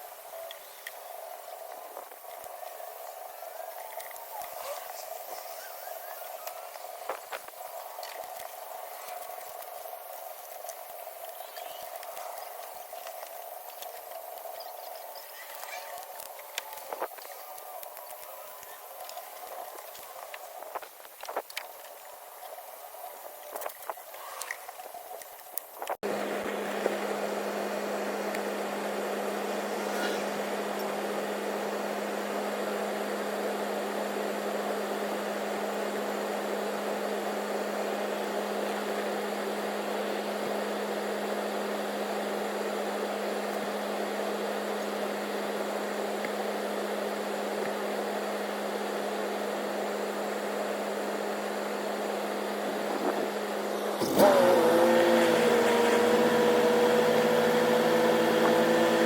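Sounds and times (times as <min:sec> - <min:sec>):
machine hum: 0:00.0 - 0:59.0
machine whine: 0:00.0 - 0:59.0.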